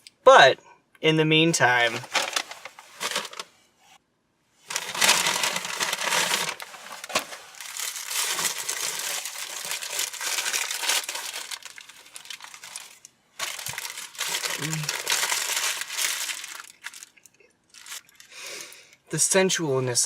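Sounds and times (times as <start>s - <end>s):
food wrapper crinkling: 2.0s - 3.5s, 4.7s - 18.4s.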